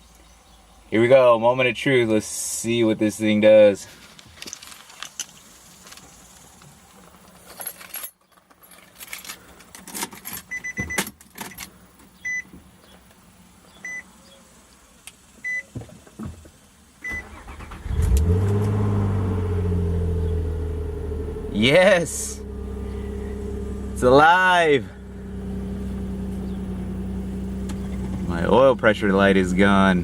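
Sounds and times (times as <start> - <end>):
car warning chime beeping: 10.5 - 11.0, 12.2 - 12.5, 13.8 - 14.1, 15.4 - 15.7, 17.0 - 17.6
car engine starting and idling: 16.5 - 30.0.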